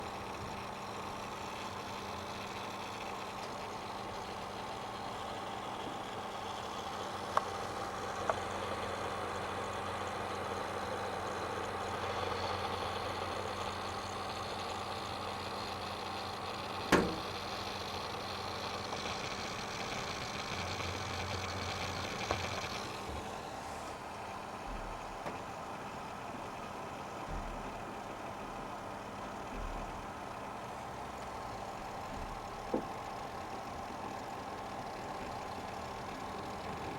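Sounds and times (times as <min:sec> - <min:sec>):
hard drive humming: 0:00.0 - 0:36.9
hard drive clicks: 0:07.2 - 0:10.4, 0:15.5 - 0:23.3, 0:24.6 - 0:26.4, 0:31.1 - 0:36.9.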